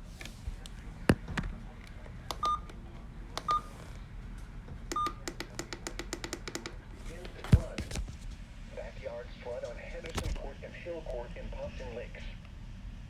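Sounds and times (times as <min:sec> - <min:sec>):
sharp clicks and taps: 0:04.9 - 0:06.8.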